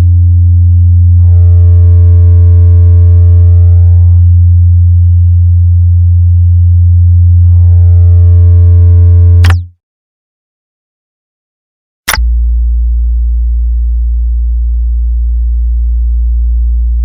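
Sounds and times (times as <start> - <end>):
buzzy higher overtones: 0.0 - 9.7
deep electronic hum: 0.0 - 9.7, 12.1 - 17.0.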